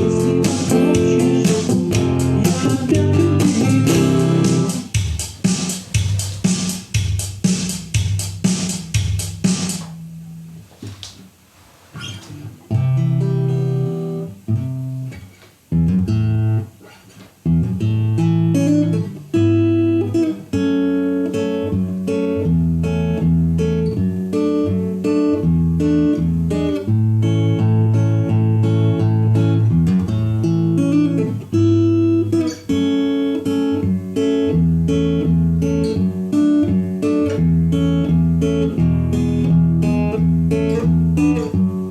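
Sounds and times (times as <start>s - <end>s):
acoustic guitar chords: 0.0s - 10.9s, 12.0s - 41.9s
sharp beats: 3.4s - 10.0s.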